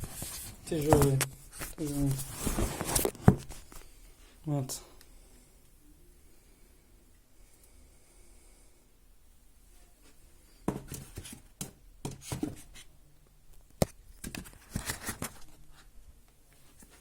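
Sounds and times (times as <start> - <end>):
cardboard packaging rustling: 0.0 - 3.7.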